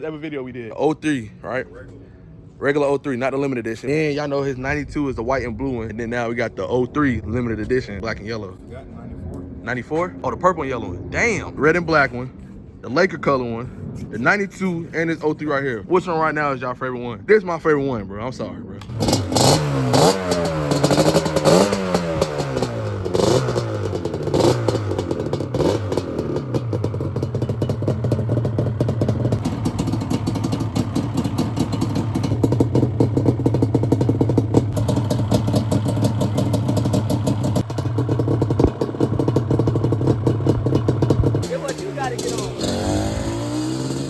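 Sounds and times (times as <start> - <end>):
motorcycle engine revving and idling: 18.8 - 44.0.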